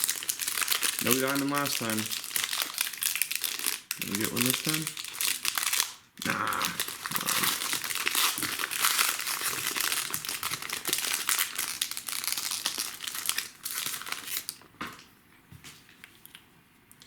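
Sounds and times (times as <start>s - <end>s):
packaging crinkling: 0.0s - 14.7s.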